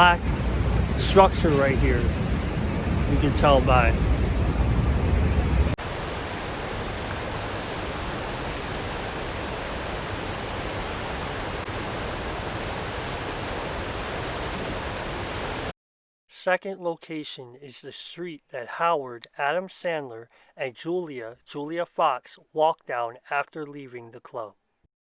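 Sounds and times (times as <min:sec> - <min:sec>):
heavy low rumble: 0:00.0 - 0:05.8
fountain water splashing: 0:00.0 - 0:15.3.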